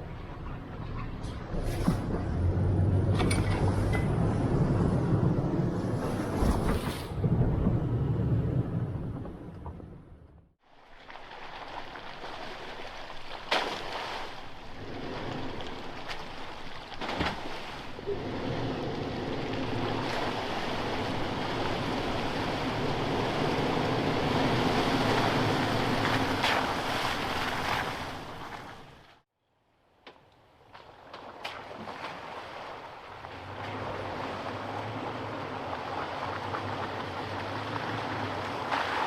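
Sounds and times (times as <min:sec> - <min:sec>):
tyre and wind noise: 0:00.0 - 0:10.3.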